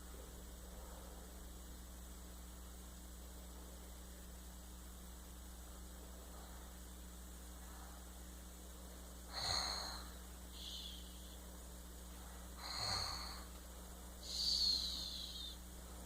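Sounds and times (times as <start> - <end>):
soft whistling breath: 10.5 - 11.4, 14.2 - 15.6
snoring with whistle: 14.3 - 15.6.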